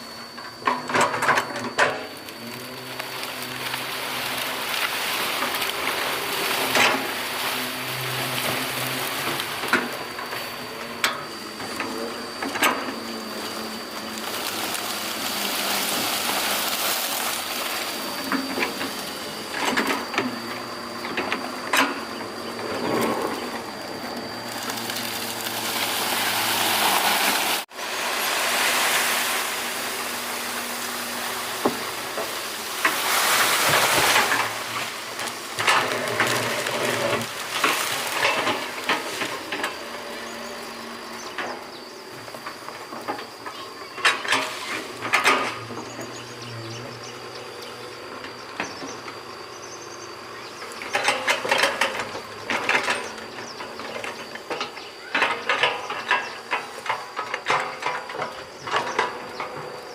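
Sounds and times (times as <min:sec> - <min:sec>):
thin high whine: 0:00.0 - 0:43.2
excavator diesel engine: 0:00.0 - 0:59.9.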